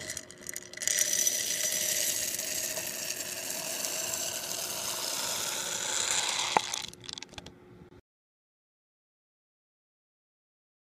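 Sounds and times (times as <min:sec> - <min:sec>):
beads poured into container rattling: 0:00.0 - 0:07.4.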